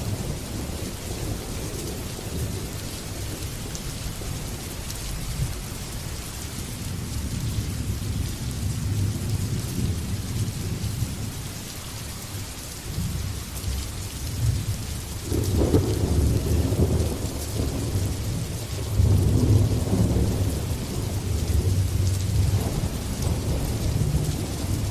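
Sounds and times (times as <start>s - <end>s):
rain hissing: 0.0s - 24.9s
thunder rumbling: 14.3s - 24.9s.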